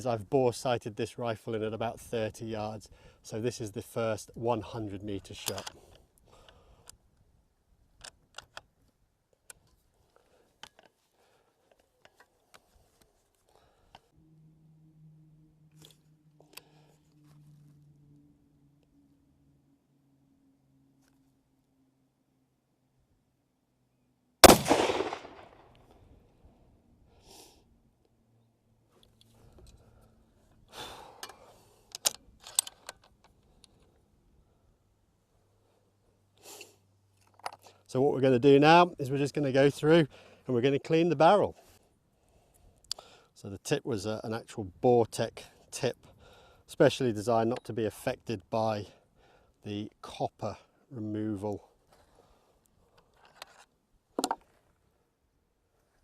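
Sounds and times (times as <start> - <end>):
rifle shot: 24.4 - 25.7.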